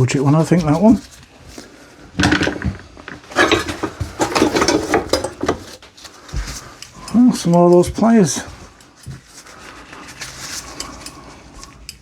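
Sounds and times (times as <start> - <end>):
metal tools clattering: 2.2 - 5.9.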